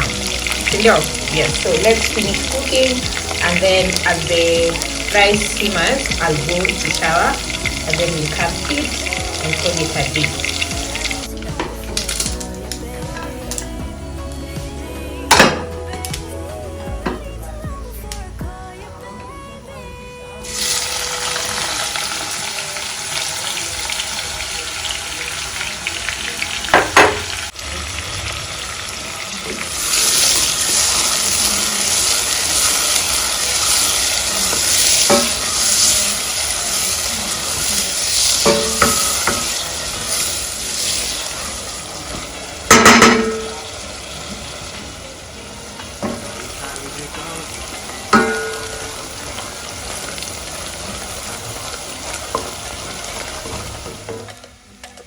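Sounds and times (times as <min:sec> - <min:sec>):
meat and onions sizzling: 0:00.0 - 0:18.6, 0:20.4 - 0:55.0
metal spoon clanking against pot: 0:38.4 - 0:39.6.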